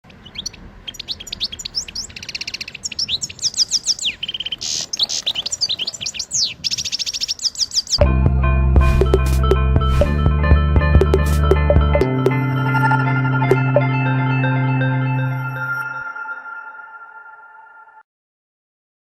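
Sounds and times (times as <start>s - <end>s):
songbird singing: 0.0s - 8.0s
music: 8.0s - 18.0s.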